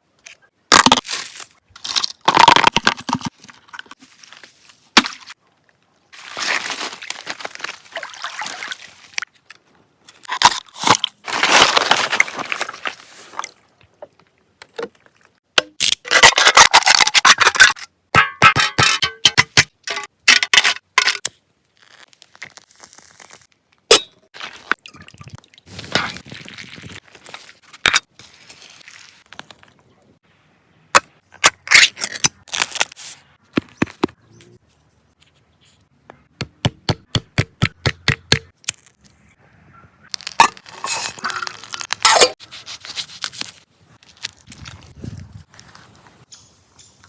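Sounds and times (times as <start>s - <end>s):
rustling and scraping: 10.0s - 13.6s, 40.2s - 46.3s.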